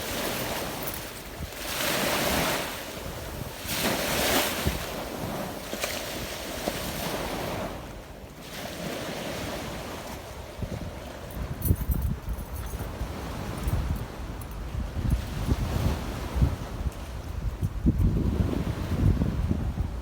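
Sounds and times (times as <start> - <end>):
wind buffeting microphone: 0.0 - 7.7, 9.2 - 20.0
sea waves washing onto beach: 0.0 - 11.6.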